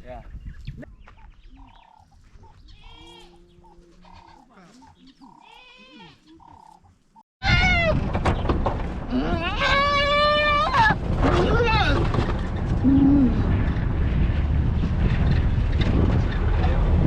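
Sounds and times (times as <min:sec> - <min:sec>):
goats bleating: 0:02.7 - 0:06.8.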